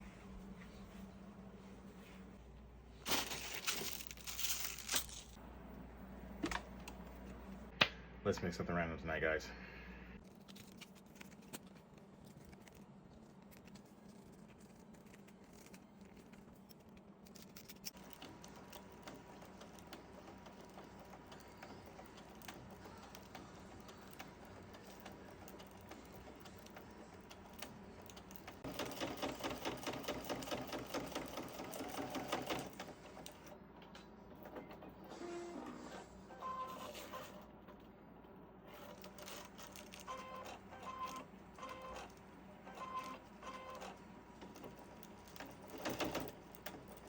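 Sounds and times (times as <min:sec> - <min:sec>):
sewing machine stitching: 0:38.7 - 0:47.0.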